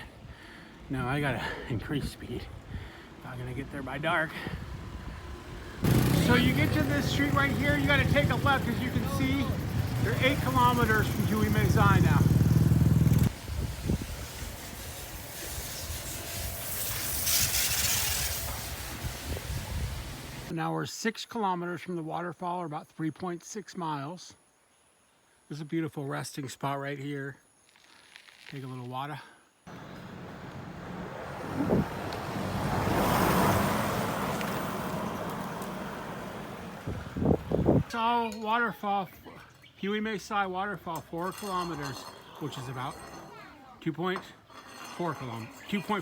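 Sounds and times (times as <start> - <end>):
vehicle passing on road: 4.6 - 20.5, 29.7 - 37.9
wind buffeting microphone: 17.4 - 20.5, 30.1 - 33.2, 36.7 - 37.9.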